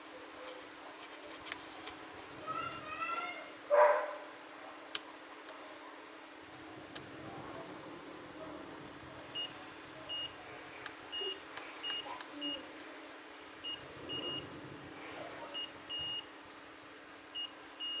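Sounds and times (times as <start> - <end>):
multimeter continuity beeps: 9.3 - 10.4, 11.1 - 12.7, 13.6 - 14.4, 15.5 - 16.3, 17.3 - 18.0.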